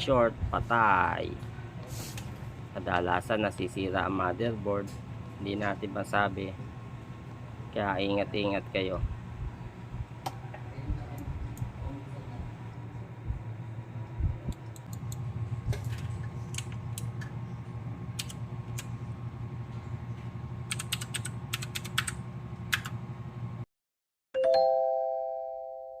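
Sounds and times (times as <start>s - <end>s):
steady low hum: 0.0s - 23.6s
keyboard typing clicks: 18.2s - 18.9s, 20.7s - 23.0s.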